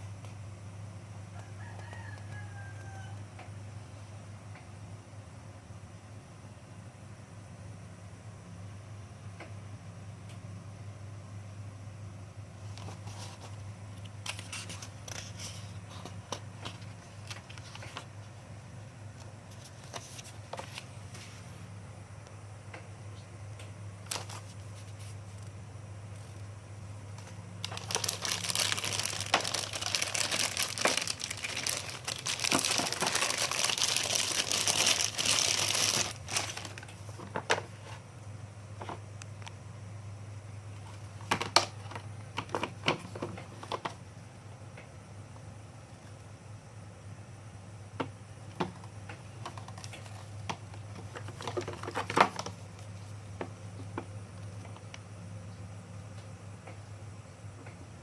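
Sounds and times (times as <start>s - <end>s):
low steady hum: 0.0s - 58.0s
packaging crinkling and crumpling: 24.0s - 25.5s, 27.2s - 38.0s, 49.5s - 53.2s.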